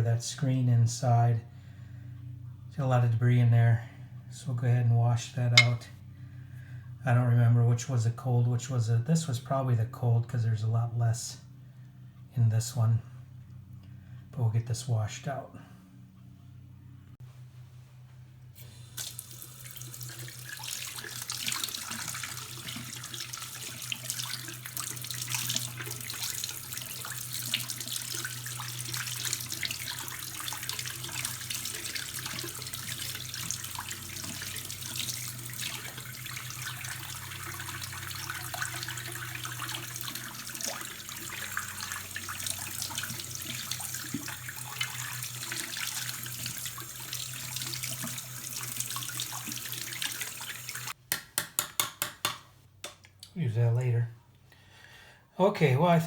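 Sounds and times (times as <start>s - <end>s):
faucet water splashing into sink: 19.0s - 51.0s.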